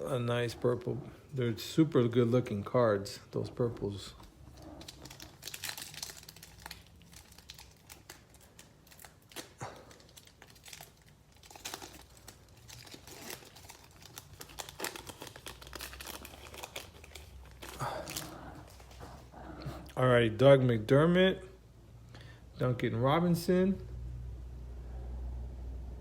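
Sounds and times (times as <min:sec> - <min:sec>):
foil wrapper crinkling and tearing: 0:04.5 - 0:19.0.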